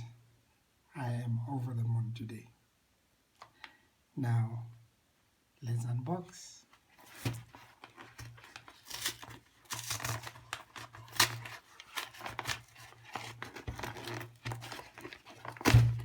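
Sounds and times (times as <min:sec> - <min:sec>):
paper packaging ripping: 0:07.0 - 0:16.0.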